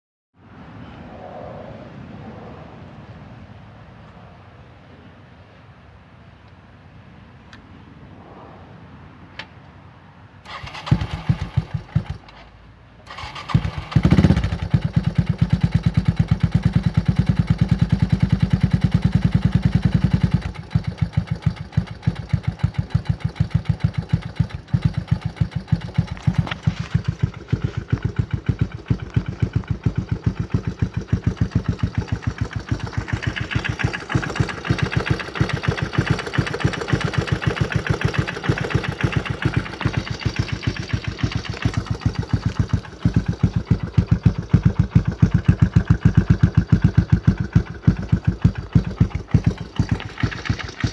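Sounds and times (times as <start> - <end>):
engine starting and idling: 10.4 - 50.9
engine knock: 13.1 - 50.9.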